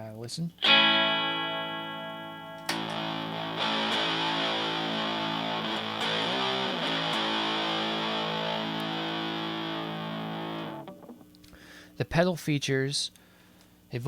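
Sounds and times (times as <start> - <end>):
fuzz electric guitar chords: 0.6 - 11.3.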